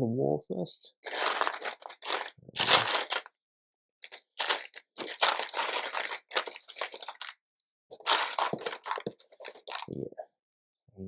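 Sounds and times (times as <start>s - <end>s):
plastic bricks rattling and clicking: 1.0s - 3.3s, 4.0s - 9.9s.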